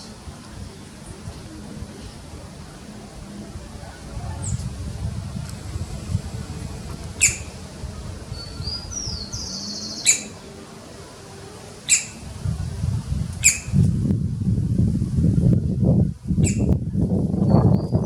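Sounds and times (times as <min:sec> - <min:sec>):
woodpecker calling: 0:05.8 - 0:10.5, 0:11.8 - 0:12.3, 0:13.4 - 0:13.8, 0:16.4 - 0:16.7.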